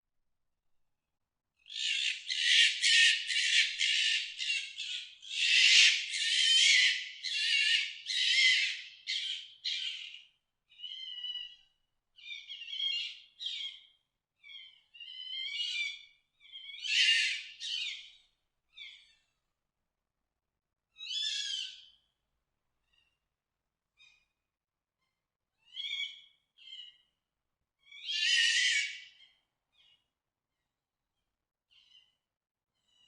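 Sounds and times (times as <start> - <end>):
fox screeching and yelping: 1.8 - 9.9.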